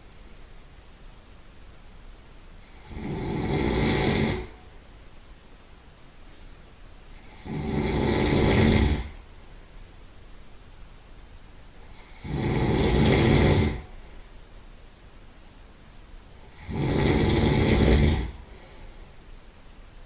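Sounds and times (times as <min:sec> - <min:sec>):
person snoring: 0:02.6 - 0:04.6, 0:07.1 - 0:09.2, 0:11.8 - 0:14.1, 0:16.4 - 0:19.0.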